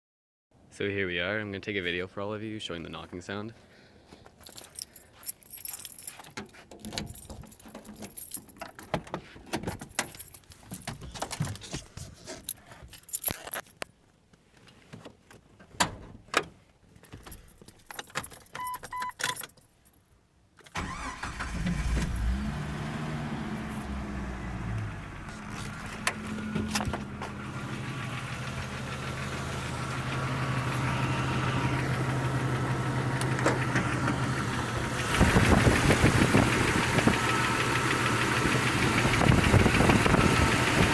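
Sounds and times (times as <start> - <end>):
keys jangling: 4.4 - 9.0, 9.7 - 11.6, 12.3 - 13.9, 17.0 - 20.0
car engine starting and idling: 20.7 - 40.9
engine knocking: 34.9 - 40.9.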